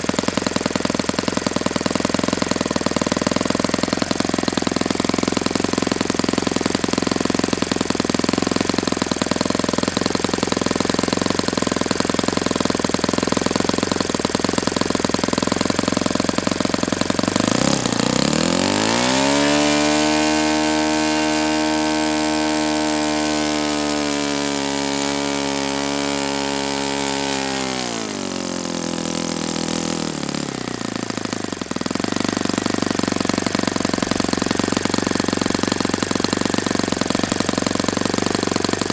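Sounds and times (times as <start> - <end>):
model engine idling and revving: 0.0 - 38.9.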